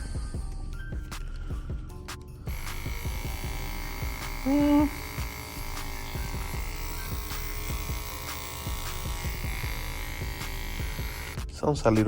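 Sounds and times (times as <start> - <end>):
short low-pitched hum: 2.5 - 11.4
hair clipper motor buzz: 2.5 - 11.5.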